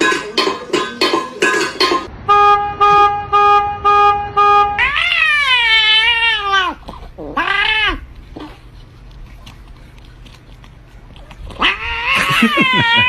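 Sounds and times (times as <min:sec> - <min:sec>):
cat yowling: 0:04.8 - 0:08.0, 0:11.5 - 0:13.0.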